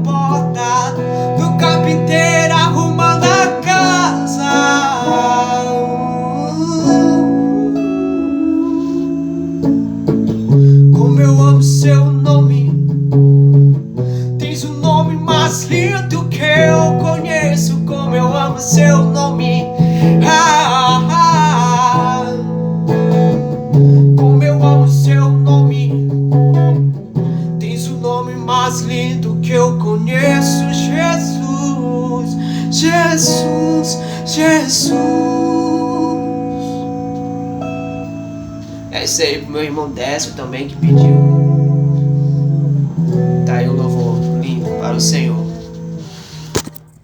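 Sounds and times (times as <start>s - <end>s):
man singing a hymn: 0.0s - 9.8s, 10.8s - 12.8s, 14.4s - 22.5s, 24.2s - 26.0s, 27.6s - 37.2s, 38.9s - 42.0s, 43.4s - 45.7s
acoustic guitar strumming: 0.0s - 47.0s.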